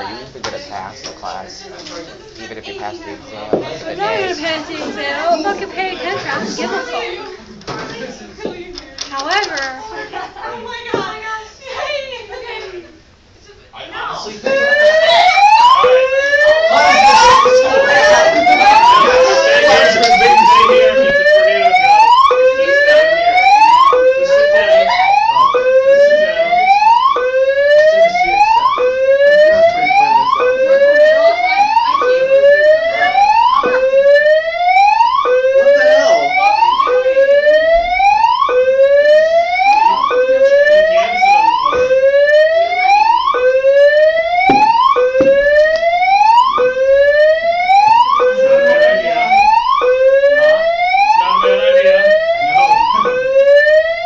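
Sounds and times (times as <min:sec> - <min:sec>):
whooping alarm siren: 0:14.4 - 0:54.0.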